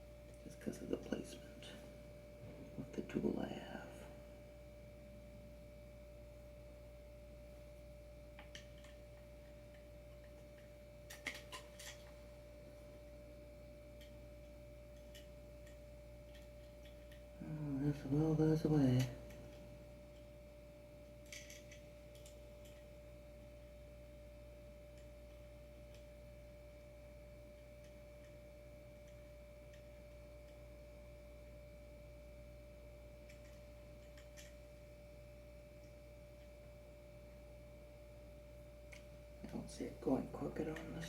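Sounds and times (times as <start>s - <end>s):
faint steady hum: 0.0s - 41.0s
faint small clicks: 33.3s - 34.6s.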